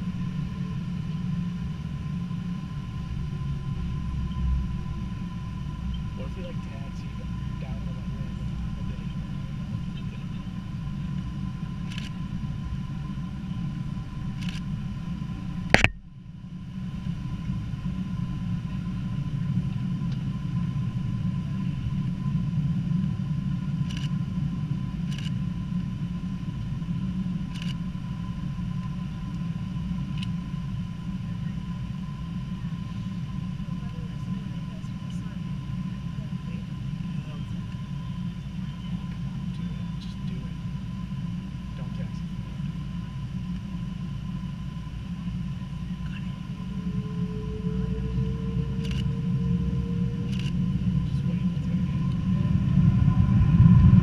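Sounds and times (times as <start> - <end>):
airplane cabin rumble and whine: 0.0 - 54.0
sharp loud click: 15.8 - 16.0.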